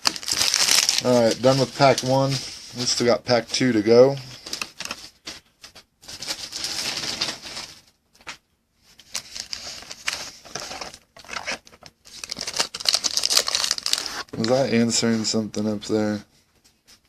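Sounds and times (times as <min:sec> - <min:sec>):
cards and plastic packaging rustling: 0:00.0 - 0:15.4.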